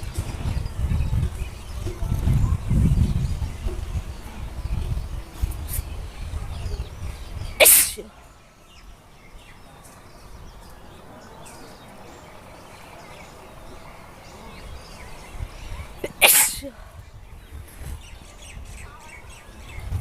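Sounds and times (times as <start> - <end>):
person sneezing: 7.6 - 8.1, 16.0 - 16.7.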